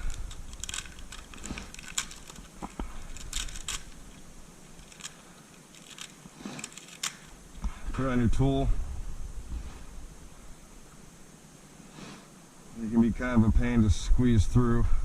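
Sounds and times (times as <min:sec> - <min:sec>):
small clicks and rustles of handling: 0:00.0 - 0:07.8.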